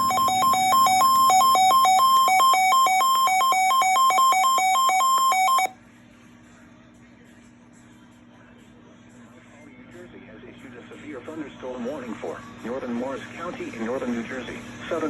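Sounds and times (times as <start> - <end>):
electronic alert tone beeping: 0.0 - 5.7.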